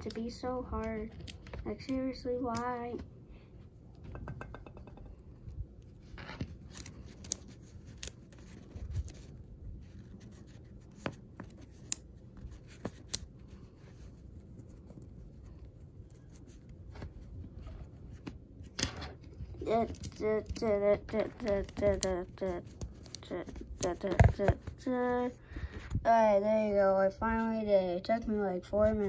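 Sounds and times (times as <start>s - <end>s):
soft rubbing and shuffling: 5.9s - 29.0s.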